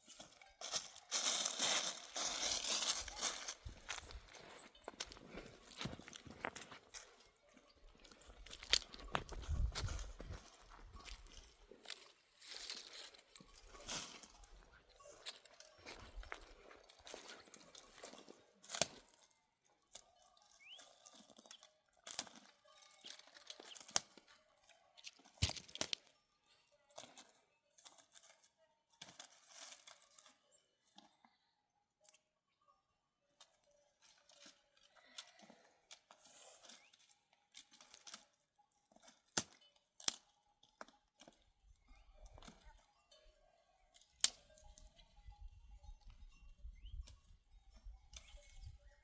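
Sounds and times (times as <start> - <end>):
rustling and crinkling: 0.0 - 19.3, 26.9 - 31.1, 33.4 - 41.4.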